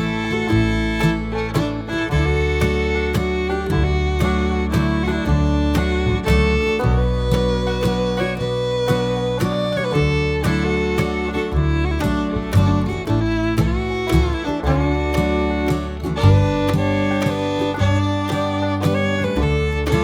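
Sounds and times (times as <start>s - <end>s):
instrumental background music: 0.0s - 20.0s.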